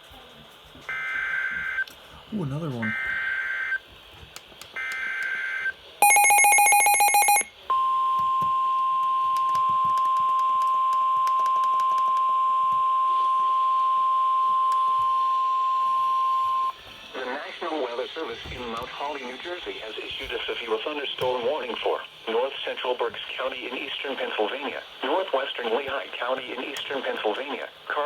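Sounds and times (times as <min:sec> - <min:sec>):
steady high alert tone: 0:06.0 - 0:07.5.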